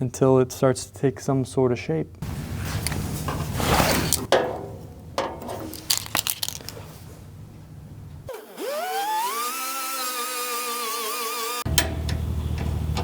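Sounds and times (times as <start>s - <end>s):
sheet metal scraping: 2.6s - 7.0s
metal clicks and knocks: 4.2s - 6.8s.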